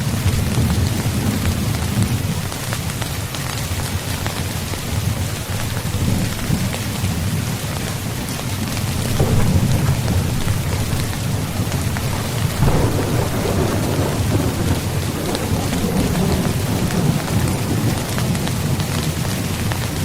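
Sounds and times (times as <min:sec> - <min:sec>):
heavy rain: 0:00.0 - 0:20.0
rolling thunder rumble: 0:05.0 - 0:20.0.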